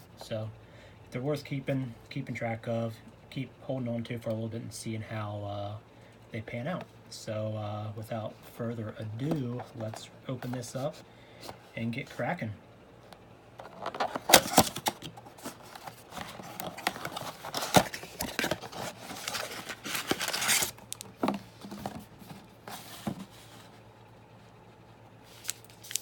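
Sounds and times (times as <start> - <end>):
plastic and cardboard tearing: 13.6 - 21.1.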